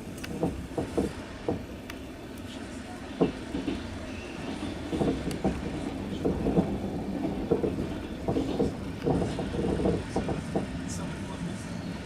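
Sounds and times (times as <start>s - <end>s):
train wheels rumbling on track: 0.0s - 12.0s
wheels knocking over rails: 4.8s - 10.7s.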